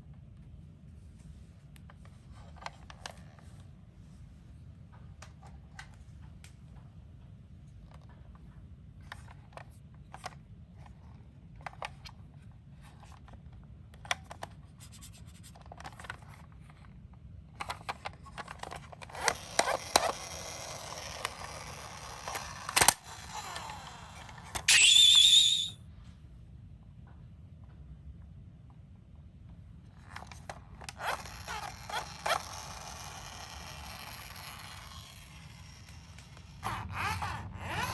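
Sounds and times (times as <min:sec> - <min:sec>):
toy cars clicking and clattering: 0:17.6 - 0:25.7, 0:30.0 - 0:36.6
toy cars rolling and scraping: 0:17.6 - 0:25.8, 0:30.0 - 0:37.9
high-pitched wavering tone: 0:24.7 - 0:25.8.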